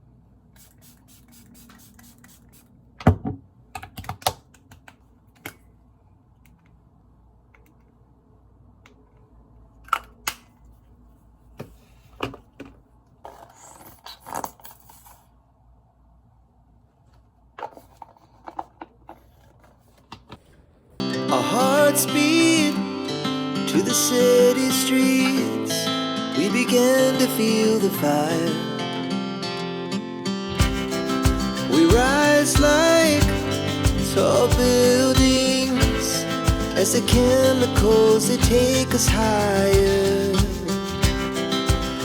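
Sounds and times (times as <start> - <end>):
faint room hum: 0.0 - 21.1.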